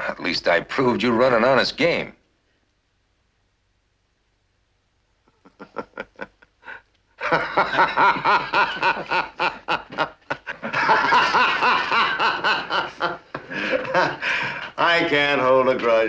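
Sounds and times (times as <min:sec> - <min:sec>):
person laughing: 0:05.3 - 0:14.6.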